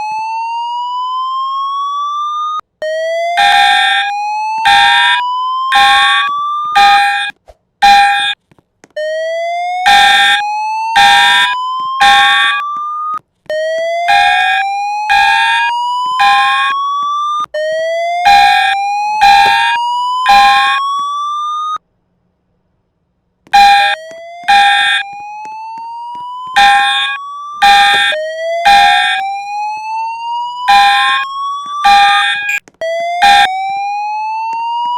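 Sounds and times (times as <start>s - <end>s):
slow-whoop alarm tone: 0.0s - 8.4s, 9.0s - 21.8s, 23.5s - 34.9s
short alarm horn blasts: 3.4s - 4.1s, 4.7s - 8.4s, 9.9s - 10.4s, 11.0s - 12.6s, 14.1s - 17.4s, 18.2s - 21.2s, 23.5s - 25.1s, 26.5s - 29.2s, 30.7s - 32.6s, 33.2s - 33.5s.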